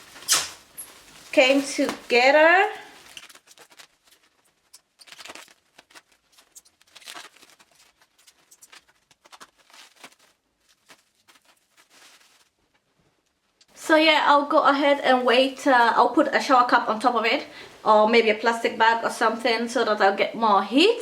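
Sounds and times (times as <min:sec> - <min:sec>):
rustling and soft clicks: 0:00.1 - 0:13.7.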